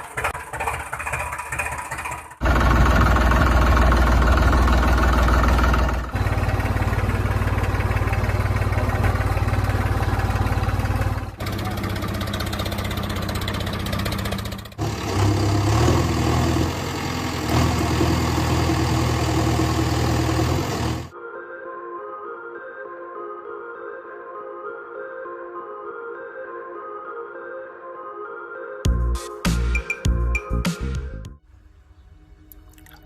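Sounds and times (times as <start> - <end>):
vehicle engine idling and revving: 0.0 - 21.1.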